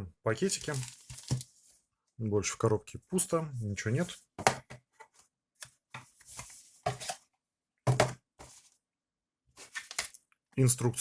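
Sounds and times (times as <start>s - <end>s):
packaging rustle: 0.6s - 1.5s.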